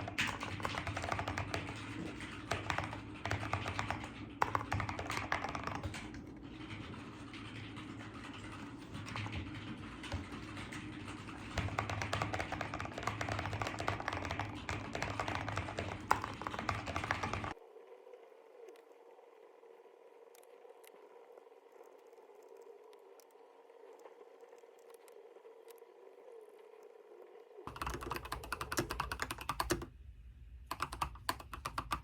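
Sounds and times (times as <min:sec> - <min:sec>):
mechanical keyboard typing: 0:00.0 - 0:17.6, 0:27.7 - 0:29.9, 0:30.7 - 0:32.0.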